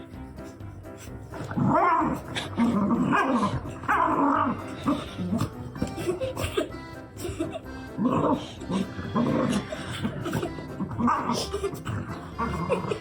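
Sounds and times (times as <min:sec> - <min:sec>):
background music: 0:00.0 - 0:13.0
dog howling: 0:01.4 - 0:05.1.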